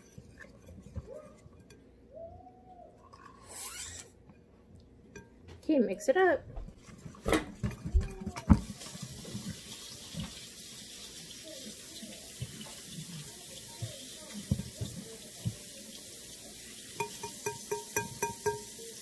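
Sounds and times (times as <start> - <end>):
whisk swishing wet mixture: 0.0 - 1.8, 6.7 - 10.8
whisk knocking against bowl: 17.0 - 18.7.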